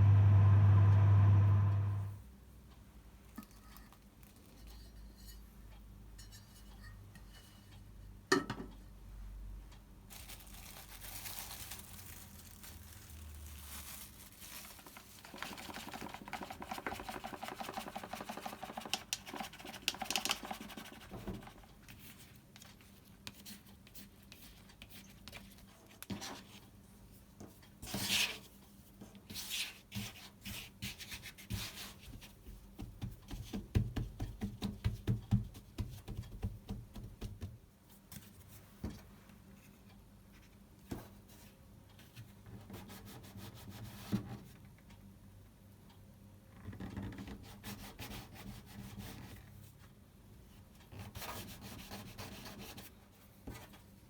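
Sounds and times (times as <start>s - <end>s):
rubbing and scraping food: 10.1s - 26.7s.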